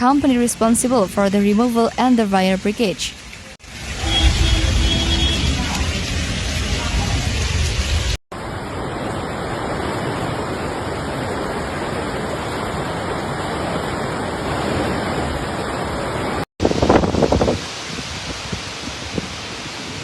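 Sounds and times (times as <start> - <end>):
running water: 0.0 - 20.0
heavy rain: 0.1 - 20.0
heavy low rumble: 3.7 - 8.2.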